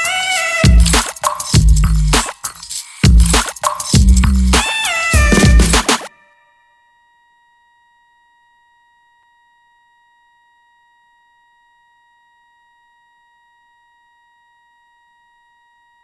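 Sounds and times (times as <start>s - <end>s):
faint high-pitched tone: 5.0s - 10.1s.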